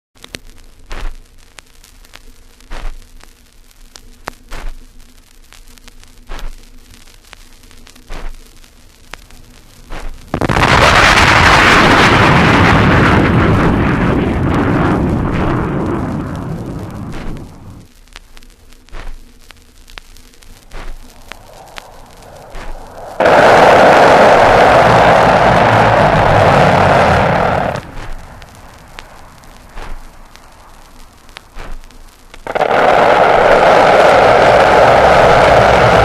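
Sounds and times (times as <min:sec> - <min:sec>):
vinyl record surface noise: 0:00.2 - 0:36.0
sonic boom: 0:10.4 - 0:17.9, 0:20.7 - 0:36.0.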